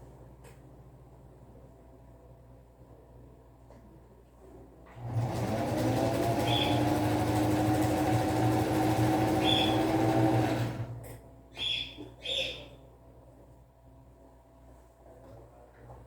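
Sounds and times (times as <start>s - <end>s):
sewing machine stitching: 4.9s - 11.1s.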